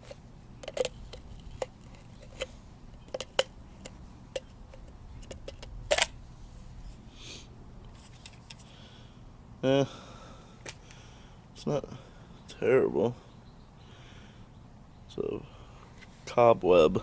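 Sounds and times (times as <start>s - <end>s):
plastic clicks and taps: 0.6s - 6.1s.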